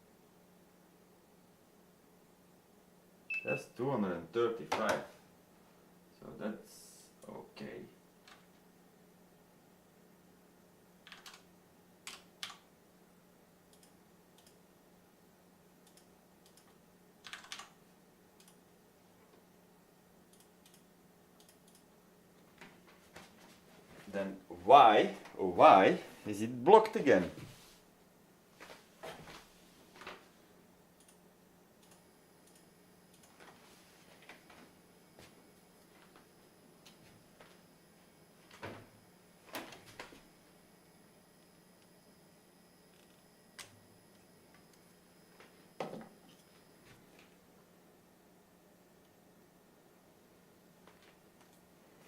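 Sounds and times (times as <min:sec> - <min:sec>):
faint steady hum: 0:00.0 - 0:52.0
computer keyboard clicks: 0:11.0 - 0:11.4, 0:15.8 - 0:17.7.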